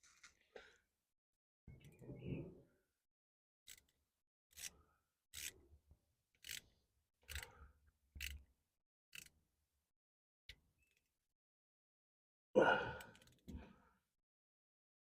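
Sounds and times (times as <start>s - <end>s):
ratchet wrench clicking: 4.5s - 4.7s, 5.3s - 5.6s, 6.4s - 6.7s, 7.3s - 7.5s, 8.2s - 8.4s, 9.1s - 9.3s.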